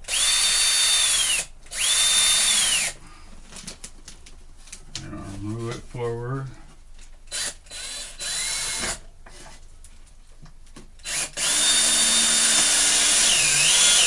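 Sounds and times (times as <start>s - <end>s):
power drill motor whine: 0.1s - 3.0s, 7.3s - 9.0s, 11.0s - 14.0s.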